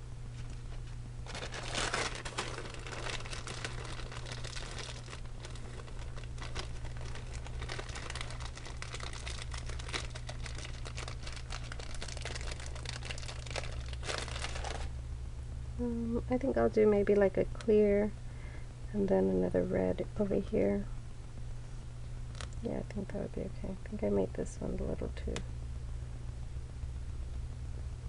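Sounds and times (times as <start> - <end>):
steady low hum: 0.0 - 28.0
packaging crinkling and rustling: 0.4 - 15.0.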